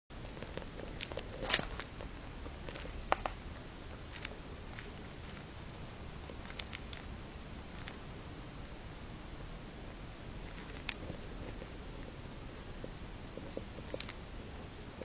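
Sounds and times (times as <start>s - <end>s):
bird beak tearing a leaf: 0.4s - 5.5s, 6.3s - 7.1s.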